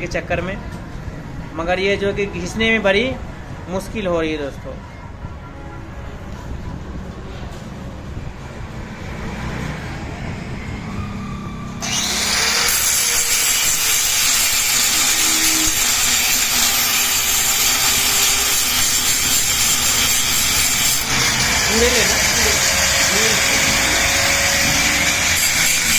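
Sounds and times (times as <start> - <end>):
grinder cutting metal: 11.8 - 25.9.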